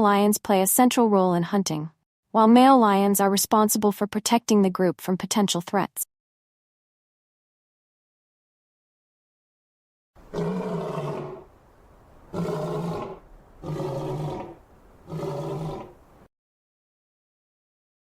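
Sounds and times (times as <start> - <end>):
lion roaring: 10.2 - 11.5, 12.3 - 16.0.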